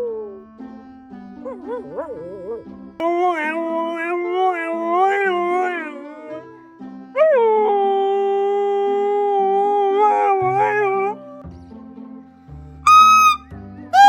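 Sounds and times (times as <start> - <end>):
dog howling: 1.5 - 6.5, 7.2 - 11.4, 12.9 - 13.4.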